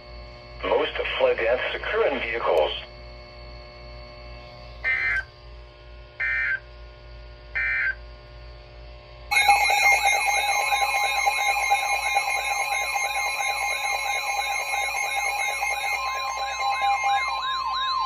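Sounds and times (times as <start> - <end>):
digital data bursts: 9.3 - 18.0
warbling electronic alert tone: 9.3 - 18.0.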